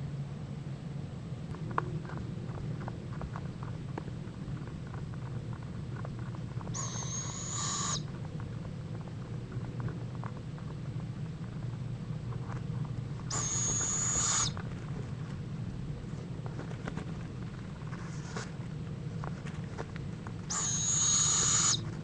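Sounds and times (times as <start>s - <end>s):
steady low hum: 0.0s - 22.0s
bird whistling call: 6.8s - 8.0s, 13.3s - 14.6s, 20.5s - 21.8s.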